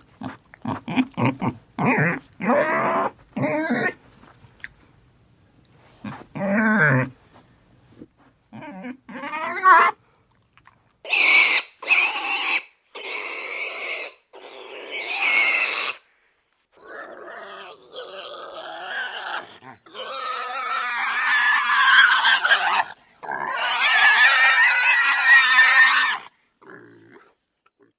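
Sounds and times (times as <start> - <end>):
pig grunting: 0.0 - 4.0, 16.8 - 27.9
pig squealing shrilly: 0.7 - 4.0, 8.6 - 10.0, 11.0 - 16.0, 16.8 - 27.2.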